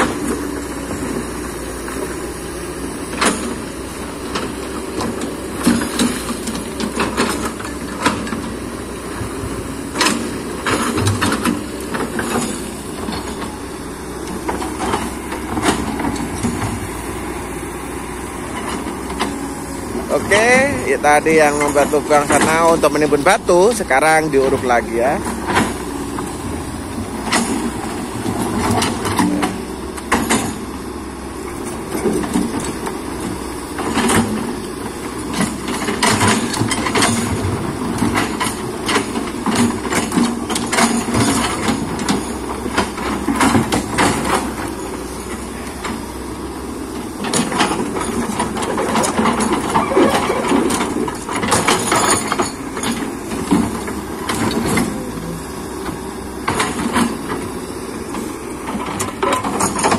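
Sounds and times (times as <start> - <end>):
excavator engine running: 0.0 - 59.9
sharp knocks and clanks: 20.0 - 30.8, 35.2 - 46.1, 47.2 - 59.9.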